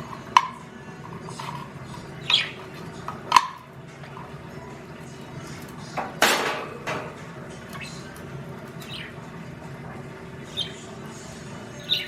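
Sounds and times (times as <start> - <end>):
budgie chirping: 2.2 - 2.8, 8.8 - 9.3, 10.4 - 10.9, 11.7 - 12.0.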